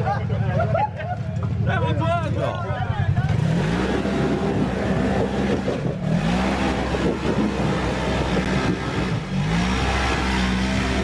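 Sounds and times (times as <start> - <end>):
engine revving under load: 2.4 - 11.0.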